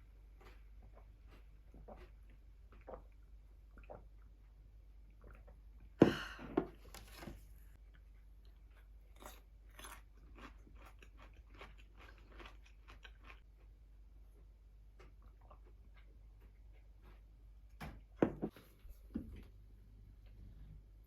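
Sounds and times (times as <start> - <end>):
chewing: 0.4 - 4.3, 7.8 - 13.7, 14.3 - 17.3
crunching food: 7.9 - 17.3.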